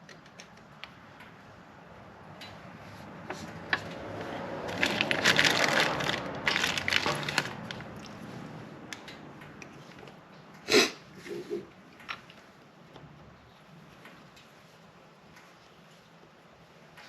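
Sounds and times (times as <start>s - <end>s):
crackling rustle and clatter: 2.3s - 10.6s.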